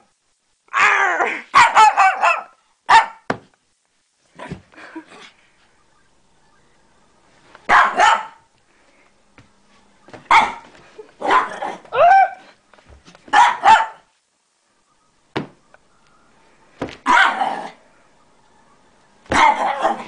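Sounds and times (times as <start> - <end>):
small dog barking: 1.5 - 3.3, 7.7 - 8.5, 10.3 - 12.5, 13.3 - 14.1, 17.0 - 17.8, 19.3 - 20.0.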